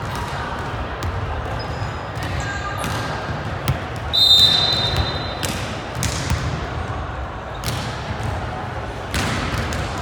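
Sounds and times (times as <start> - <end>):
referee's whistle blast: 4.1 - 5.4
volleyball hits and thuds: 4.8 - 6.6, 9.1 - 10.0.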